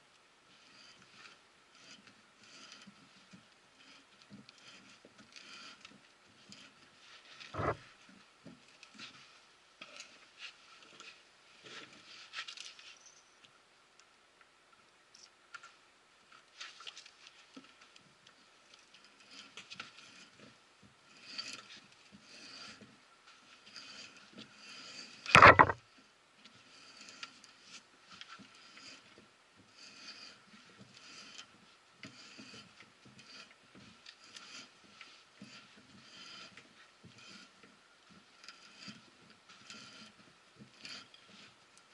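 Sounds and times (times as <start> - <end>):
steel scraping on steel: 7.6 - 7.8, 21.1 - 22.8, 23.6 - 25.8, 29.8 - 31.5, 35.4 - 37.6, 38.5 - 39.0
loud metal clunk: 25.4 - 25.8.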